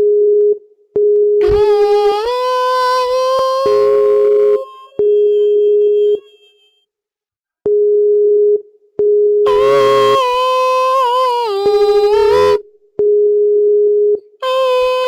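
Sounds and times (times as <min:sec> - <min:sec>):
buzzy wavering note: 0:01.4 - 0:06.7, 0:09.5 - 0:12.6, 0:14.4 - 0:15.0
electronic beep tone: 0:03.6 - 0:06.8.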